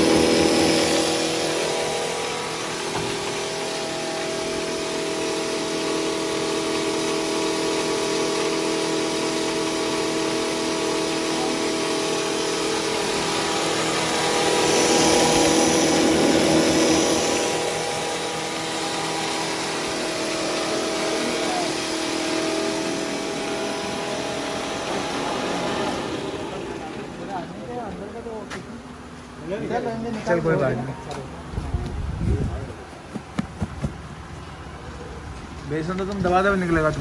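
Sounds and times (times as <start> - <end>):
grinder motor humming: 0.0 - 28.9.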